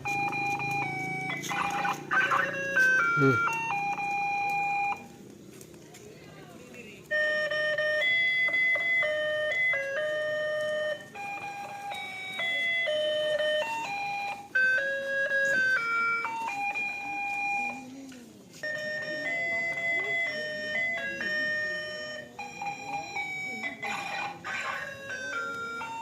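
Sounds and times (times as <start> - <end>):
electronic beep tune: 0.0 - 5.1.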